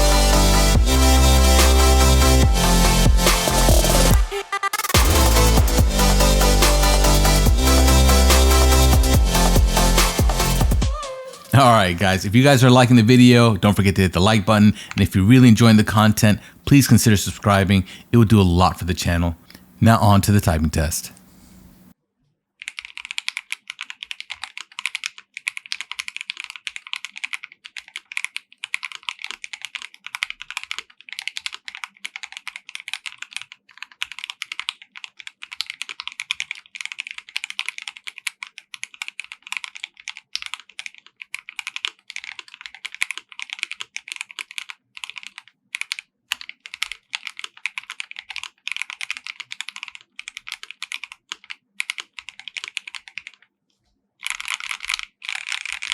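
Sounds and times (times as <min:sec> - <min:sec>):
mechanical keyboard typing: 0:22.6 - 0:53.5, 0:54.2 - 0:55.9.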